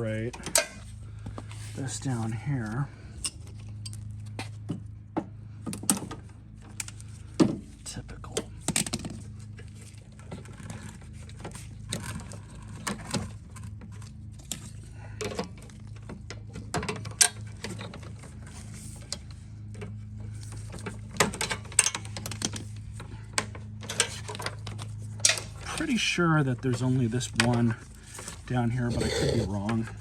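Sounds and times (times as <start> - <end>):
steady low hum: 0.0 - 30.0
tools clicking and rattling: 20.8 - 25.9.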